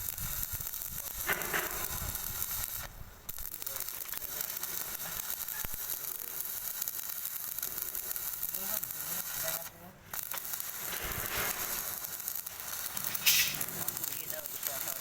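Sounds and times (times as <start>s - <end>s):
welding torch flame hissing: 0.0s - 15.0s.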